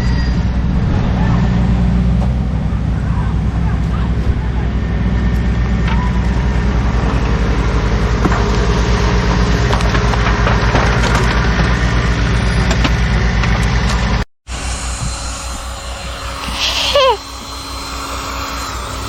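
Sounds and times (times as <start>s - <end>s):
diesel engine under load: 0.0s - 19.0s
wood cracking and snapping: 8.0s - 14.2s.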